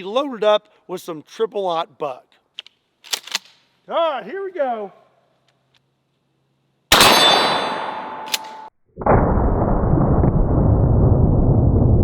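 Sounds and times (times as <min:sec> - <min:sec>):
shotgun shot: 0:06.9 - 0:08.7
steel target ringing: 0:06.9 - 0:08.7.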